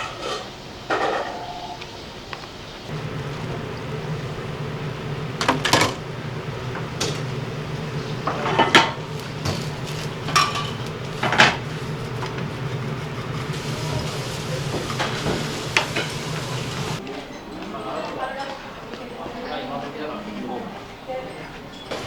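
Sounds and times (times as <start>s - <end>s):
steady low hum: 2.9s - 17.0s
plates and cutlery clattering: 3.0s - 17.0s.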